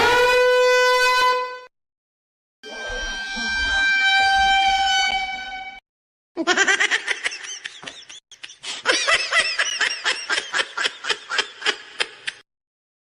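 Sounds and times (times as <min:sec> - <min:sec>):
person laughing hard: 0:06.4 - 0:12.4.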